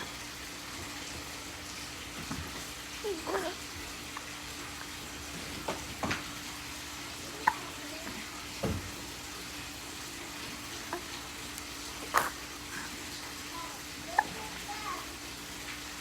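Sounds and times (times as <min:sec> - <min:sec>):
baby hiccupping: 0:03.0 - 0:03.7, 0:07.4 - 0:07.8, 0:10.8 - 0:13.2, 0:14.1 - 0:14.6.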